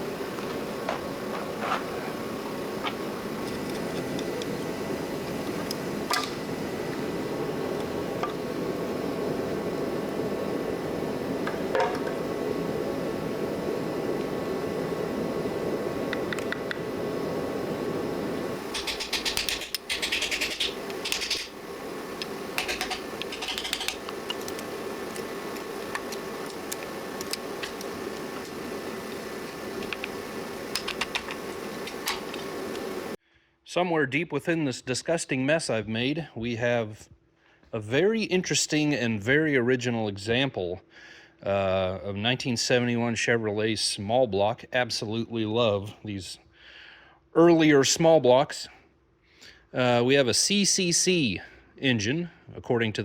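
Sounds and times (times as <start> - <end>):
fan-like hum: 0.0 - 53.0
rapid metallic clicking and clatter: 18.7 - 21.6, 22.2 - 25.2.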